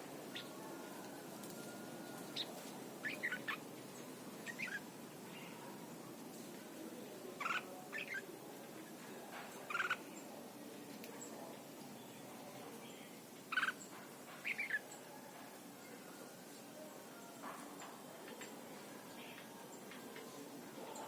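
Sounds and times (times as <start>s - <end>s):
steady background noise: 0.0s - 21.0s
bird singing warbled phrases: 0.3s - 0.6s, 2.3s - 6.0s, 7.3s - 9.0s, 9.6s - 10.4s, 11.2s - 14.9s.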